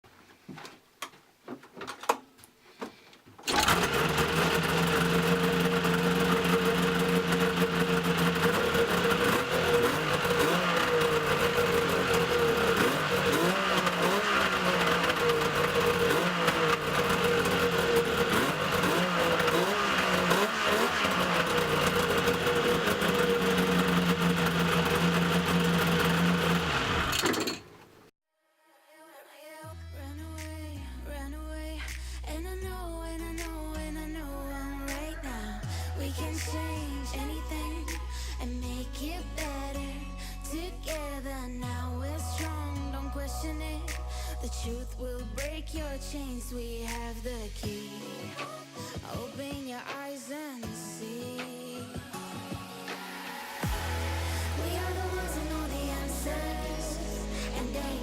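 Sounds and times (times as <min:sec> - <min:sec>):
snowmobile engine idling and revving: 0:03.5 - 0:27.6, 0:53.6 - 0:58.0.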